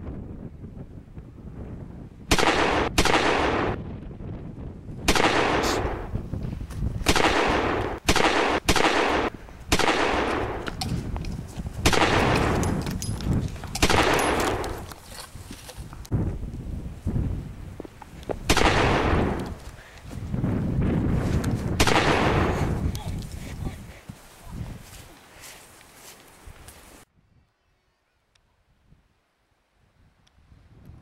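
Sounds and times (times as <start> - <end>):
loud gunshots: 2.3 - 3.8, 5.1 - 6.1, 7.1 - 10.6, 11.8 - 12.6, 13.8 - 14.7, 18.5 - 19.4, 21.8 - 22.7.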